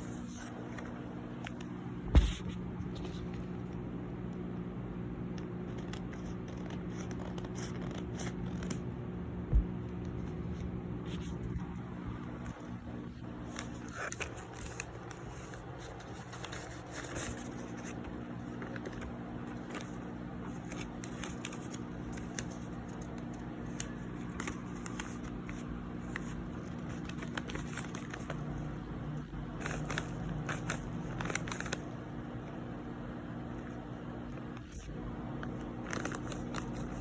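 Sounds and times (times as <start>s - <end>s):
plastic packaging crinkling: 13.4s - 28.7s, 29.6s - 32.1s, 34.7s - 37.0s.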